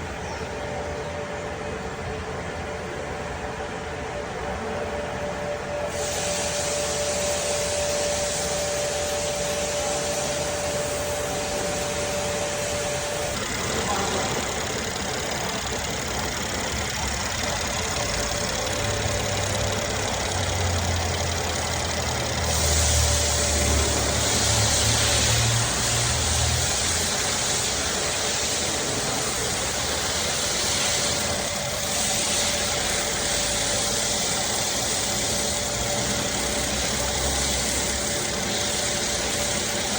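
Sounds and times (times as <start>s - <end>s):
car engine running: 8.3s - 39.9s.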